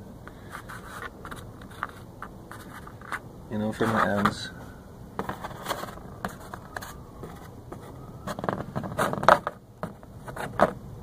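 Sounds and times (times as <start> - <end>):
small parts scratching and clicking: 0.5 - 4.4.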